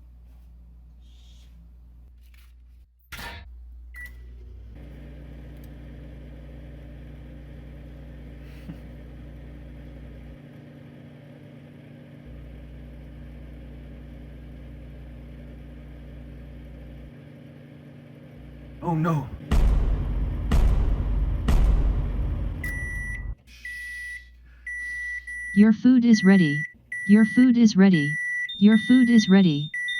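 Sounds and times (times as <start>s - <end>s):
microwave oven humming: 3.5s - 29.9s
keypad beep: 22.6s - 29.9s.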